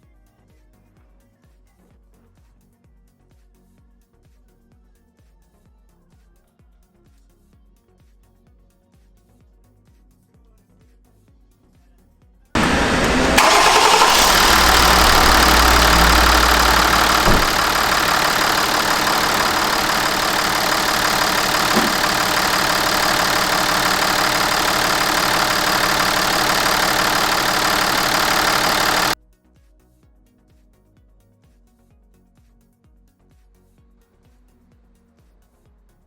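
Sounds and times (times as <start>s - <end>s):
car engine starting and idling: 12.6s - 29.2s.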